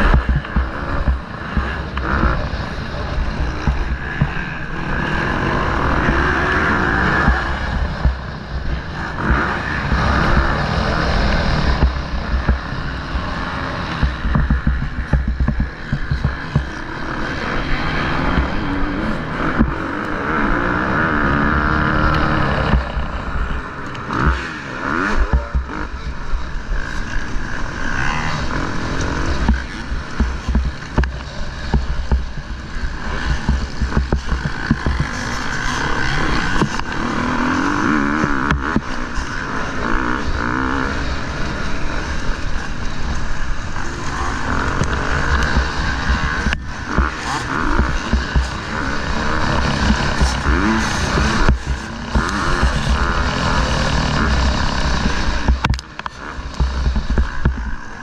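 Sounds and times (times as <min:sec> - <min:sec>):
motocross bike engine revving: 0:00.0 - 0:58.0.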